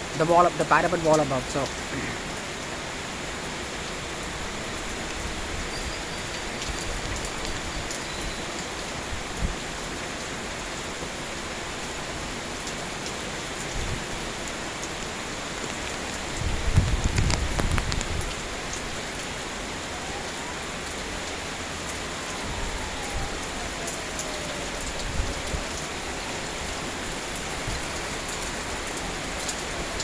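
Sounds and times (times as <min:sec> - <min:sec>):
steady rainfall: 0:00.0 - 0:30.0.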